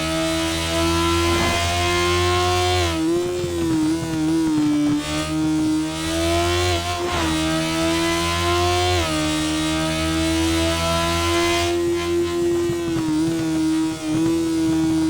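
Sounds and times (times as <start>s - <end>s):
motorcycle engine running hard: 0.0s - 15.0s.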